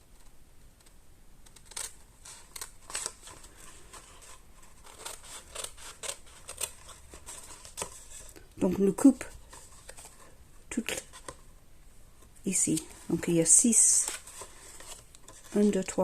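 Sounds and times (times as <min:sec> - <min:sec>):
scissors snipping cardstock: 0:04.8 - 0:07.9.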